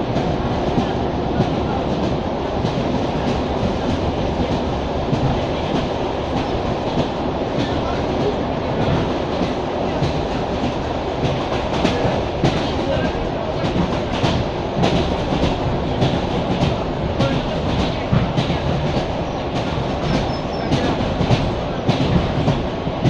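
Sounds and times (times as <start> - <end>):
train wheels clattering over rail joints: 8.8 - 23.0.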